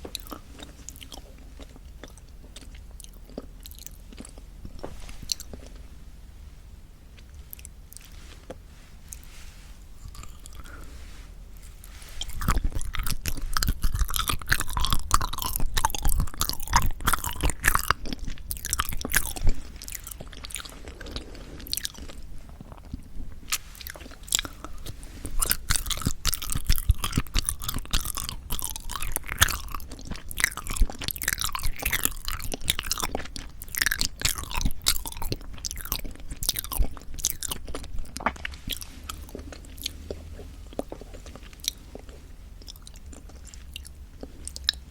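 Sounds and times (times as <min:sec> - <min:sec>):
chewing clicking mouth sounds: 0:12.2 - 0:23.7, 0:24.3 - 0:40.1, 0:40.7 - 0:44.9.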